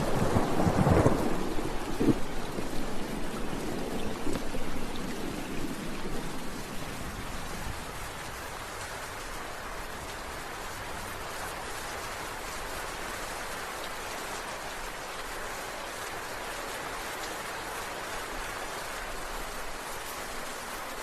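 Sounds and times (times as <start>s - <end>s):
thunder rumble: 0.0s - 7.9s
rain pattering: 0.0s - 21.0s.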